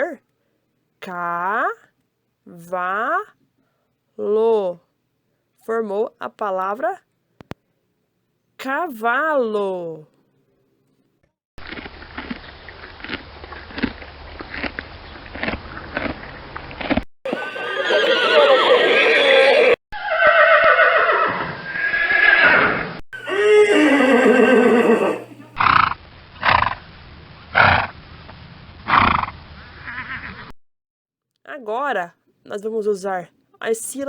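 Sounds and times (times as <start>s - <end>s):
hooves clopping: 17.3s - 19.7s
horse whinnying: 17.3s - 25.6s.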